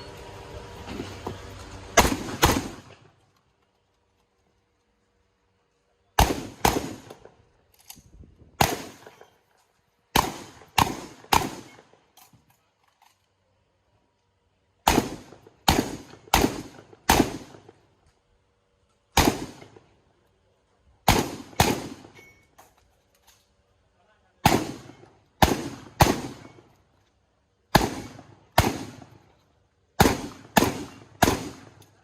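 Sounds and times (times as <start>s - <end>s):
shotgun shots: 1.9s - 3.1s, 6.2s - 7.4s, 8.6s - 9.3s, 10.1s - 11.9s, 14.8s - 17.8s, 19.1s - 19.9s, 21.0s - 22.2s, 24.4s - 26.7s, 27.7s - 29.2s, 30.0s - 31.9s.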